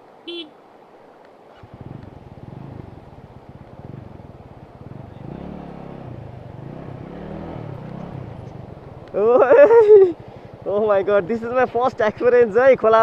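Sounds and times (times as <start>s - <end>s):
motorcycle engine revving: 1.5s - 11.7s.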